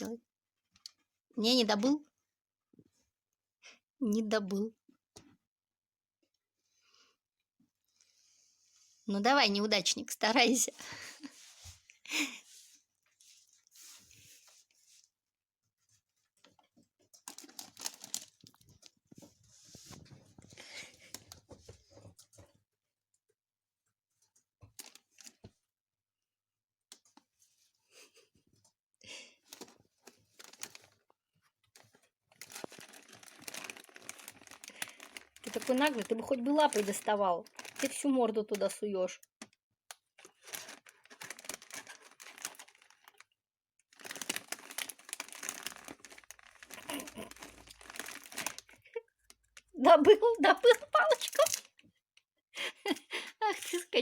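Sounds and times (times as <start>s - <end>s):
plastic packet crinkling: 17.2s - 19.0s, 24.8s - 25.4s, 29.5s - 31.0s, 31.8s - 38.8s, 40.2s - 51.8s.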